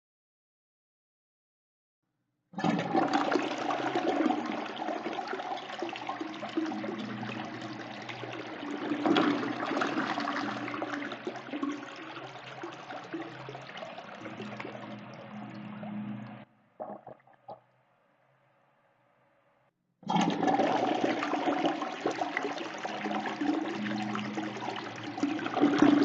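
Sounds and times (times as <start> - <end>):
toilet flushing: 2.6 - 17.1, 20.1 - 26.0.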